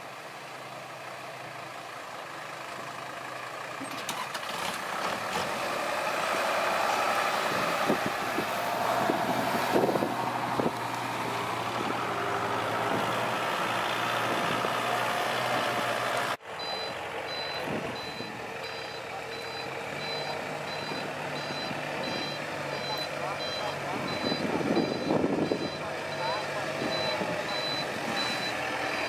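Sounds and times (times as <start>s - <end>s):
heavy diesel machinery running: 0.0s - 29.0s
reversing alarm beeping: 16.6s - 29.0s.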